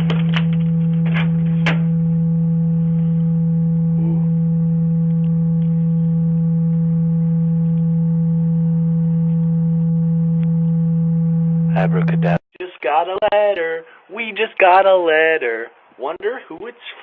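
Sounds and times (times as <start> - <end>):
loud steady low hum: 0.0 - 12.4.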